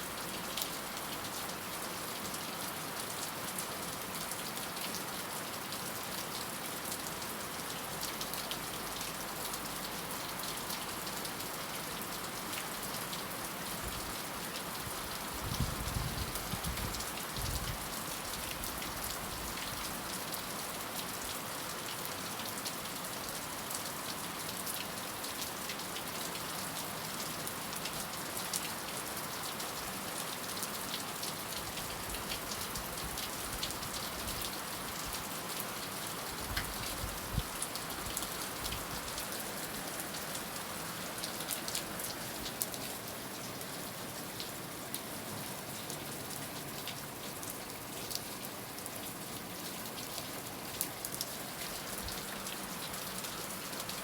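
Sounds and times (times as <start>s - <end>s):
heavy rain falling: 22.9s - 54.0s.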